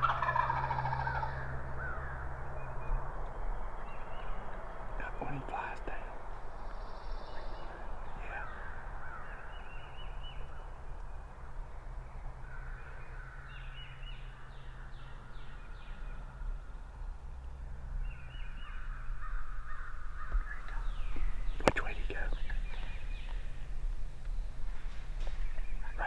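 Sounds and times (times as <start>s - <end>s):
crows cawing: 0.0s - 2.4s, 8.3s - 9.7s, 12.4s - 15.9s, 18.6s - 20.5s
small birds calling: 0.0s - 26.0s.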